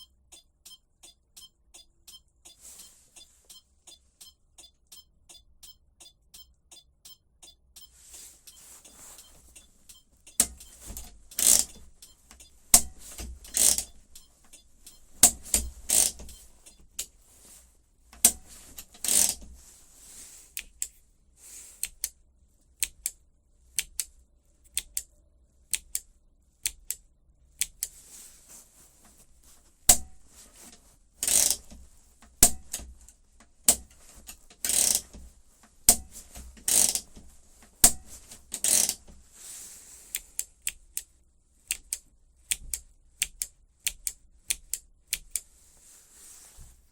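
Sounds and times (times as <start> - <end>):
sharp mechanical clicks: 0.0 - 17.2, 18.2 - 19.5, 21.8 - 22.2, 22.8 - 23.2, 23.8 - 28.0, 31.2 - 39.2, 40.1 - 45.5.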